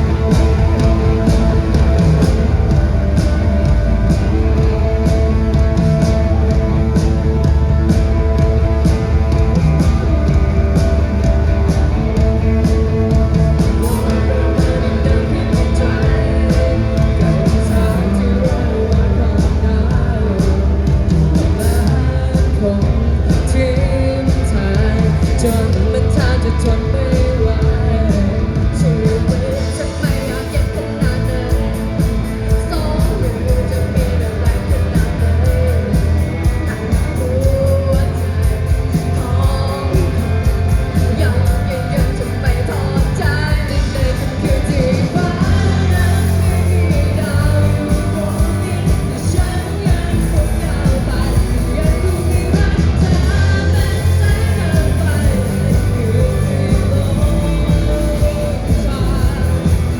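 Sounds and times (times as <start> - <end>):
loud bass: 0.0 - 59.9
person singing: 0.0 - 59.9
steady drums: 0.0 - 59.9.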